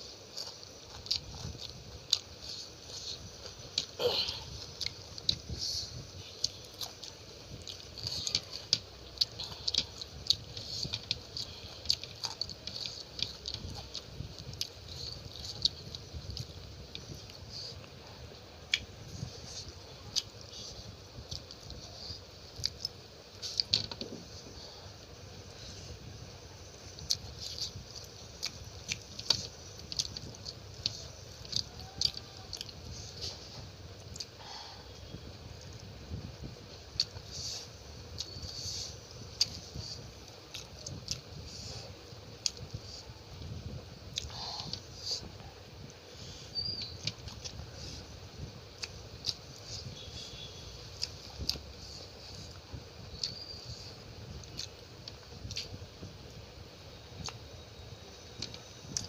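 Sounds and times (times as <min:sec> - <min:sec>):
wet chewing and lip-smacking: 0:00.2 - 0:24.1, 0:26.6 - 0:56.4, 0:57.2 - 0:57.6, 0:58.2 - 0:59.0.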